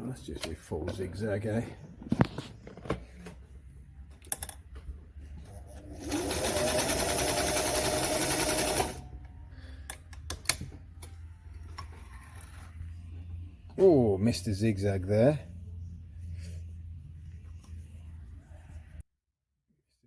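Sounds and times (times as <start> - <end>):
sewing machine stitching: 5.7 - 9.0.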